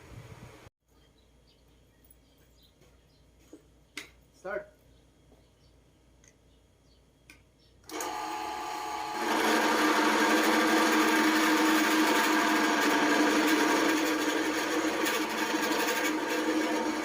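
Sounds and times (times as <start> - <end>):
electric motor whining: 7.9 - 17.0.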